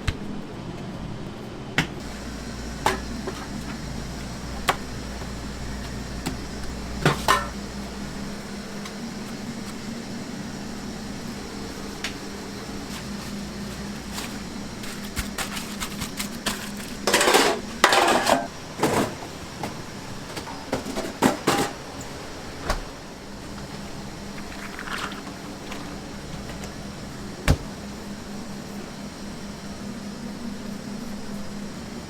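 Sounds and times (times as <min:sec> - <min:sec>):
steady machine hum: 0:00.0 - 0:32.0
utensils and dishes clattering: 0:07.0 - 0:07.7, 0:14.1 - 0:19.3, 0:20.3 - 0:21.8.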